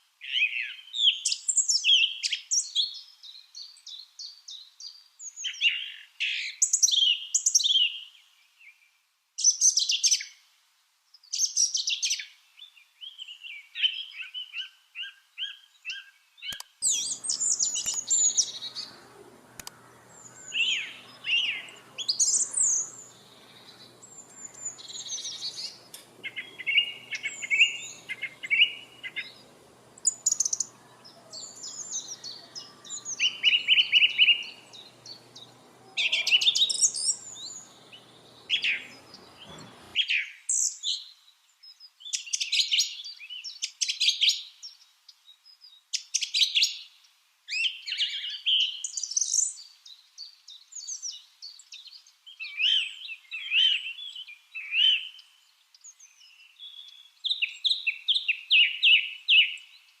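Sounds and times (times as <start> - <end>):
lovebirds chirping: 15.5 - 40.8
faint background hum: 16.8 - 40.0.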